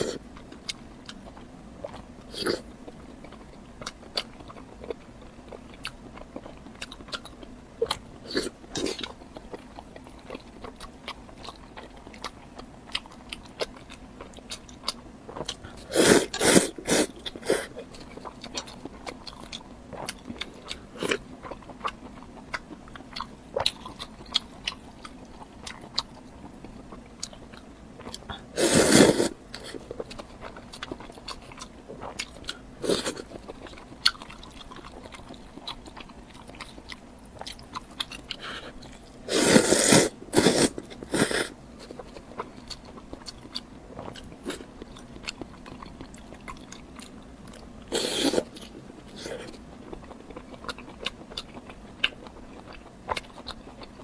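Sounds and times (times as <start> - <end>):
chewing and crunching food: 0.0 - 54.0.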